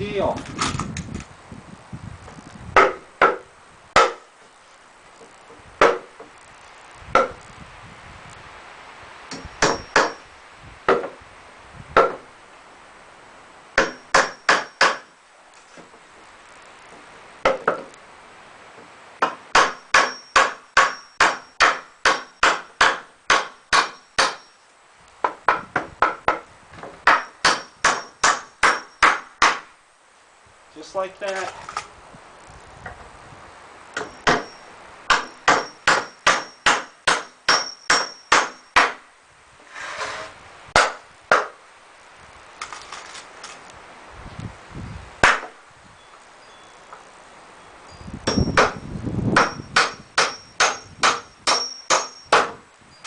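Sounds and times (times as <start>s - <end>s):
hammer driving nails into wood: 9.3s - 10.2s, 13.8s - 15.1s, 19.2s - 24.4s, 27.0s - 29.7s, 34.0s - 34.5s, 35.1s - 39.0s, 49.4s - 52.6s.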